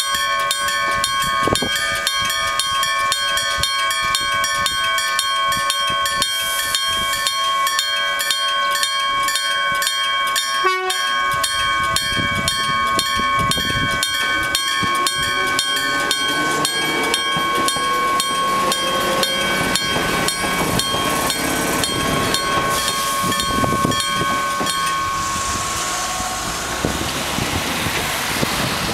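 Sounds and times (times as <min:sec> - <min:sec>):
level crossing gong bell ringing: 0:00.0 - 0:26.6
rush of passing train: 0:00.0 - 0:28.9
train motor whine: 0:09.0 - 0:28.9.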